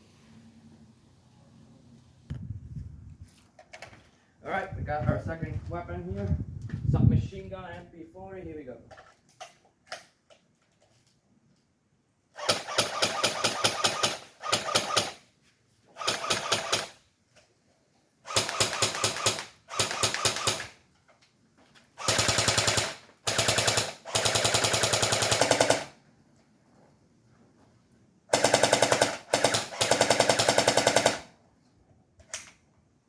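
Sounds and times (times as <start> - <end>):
airsoft submachine gun bursts: 12.4 - 15.2, 16.0 - 17.0, 18.3 - 20.8, 22.0 - 25.9.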